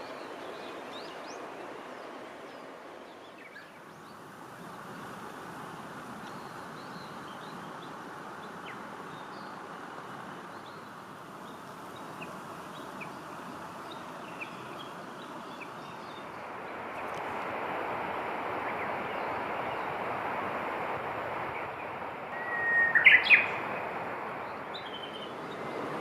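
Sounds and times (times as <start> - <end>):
steady rushing noise: 11.1 - 22.6, 23.2 - 26.0
small birds chirping: 22.4 - 23.9, 24.5 - 26.0.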